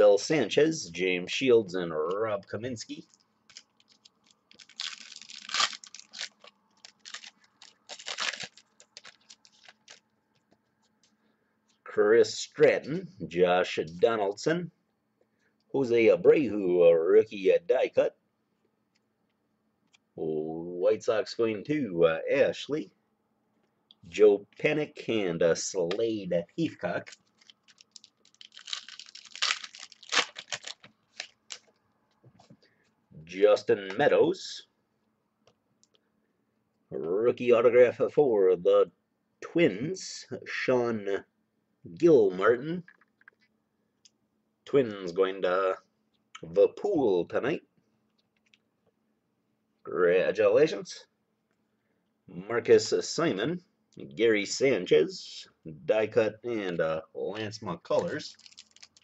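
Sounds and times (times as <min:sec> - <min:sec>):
wrapper crinkling: 0:03.0 - 0:10.1, 0:27.0 - 0:31.8, 0:57.9 - 0:59.0
cards clicking and rustling: 0:03.5 - 0:10.0
wrapper tearing: 0:03.5 - 0:10.0, 0:27.0 - 0:31.7, 0:57.9 - 0:59.0.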